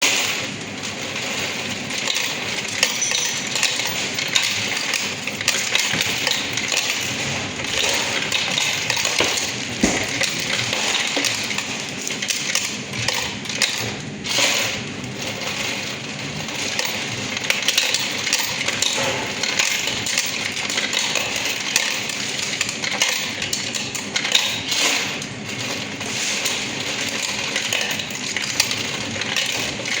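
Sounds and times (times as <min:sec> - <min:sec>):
coin counting machine rattling: 0:00.0 - 0:30.0
coins clattering: 0:00.1 - 0:12.7.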